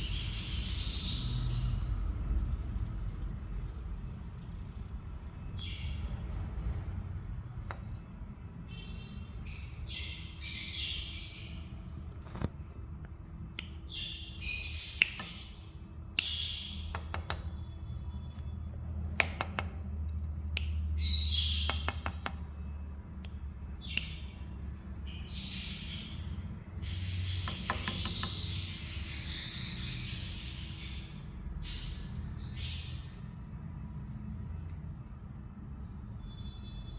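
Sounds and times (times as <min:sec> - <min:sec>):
sharp clicks: 0:16.2 - 0:17.6, 0:19.0 - 0:19.9
parrots chirping and chattering: 0:23.8 - 0:33.4.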